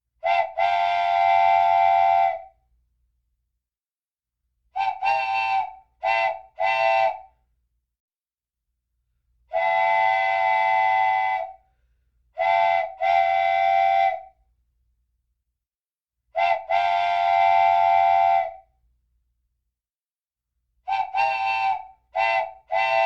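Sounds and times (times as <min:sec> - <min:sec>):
wooden train whistle blowing: 0:00.2 - 0:02.6, 0:04.8 - 0:07.4, 0:09.5 - 0:11.6, 0:12.4 - 0:14.4, 0:16.4 - 0:18.7, 0:20.9 - 0:23.0.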